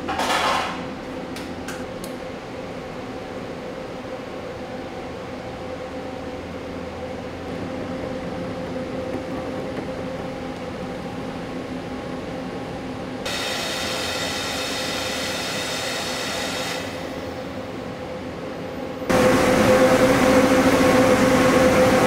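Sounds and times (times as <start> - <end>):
food-processing machine humming: 0.0 - 22.0
high whine and hiss: 2.3 - 22.0.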